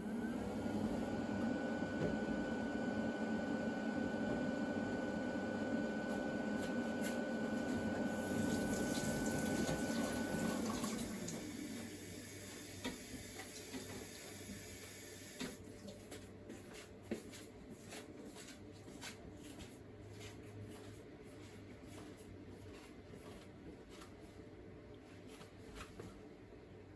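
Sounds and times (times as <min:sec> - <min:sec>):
refrigerator humming: 0:00.0 - 0:17.3.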